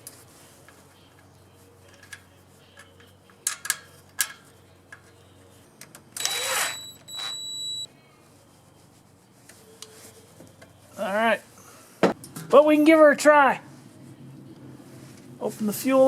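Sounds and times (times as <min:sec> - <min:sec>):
high-pitched ringing tone: 0:06.2 - 0:07.9.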